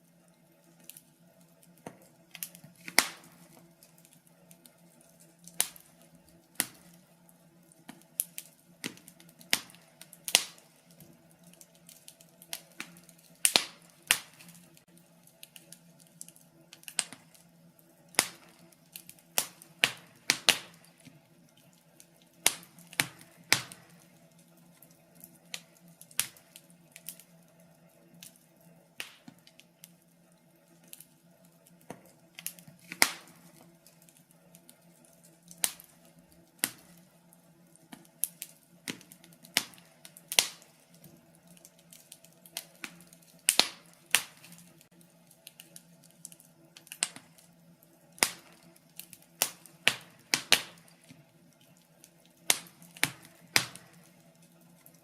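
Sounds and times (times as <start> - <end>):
wood fire crackling and popping: 0.0 - 55.0.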